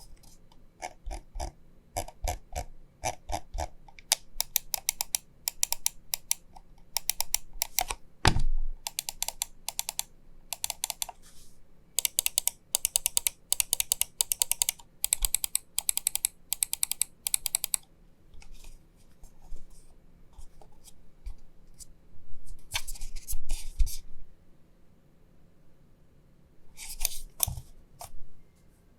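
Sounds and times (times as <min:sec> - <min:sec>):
mouse buttons clicking: 0:04.1 - 0:06.4, 0:07.0 - 0:08.0, 0:08.8 - 0:11.2, 0:12.0 - 0:17.8.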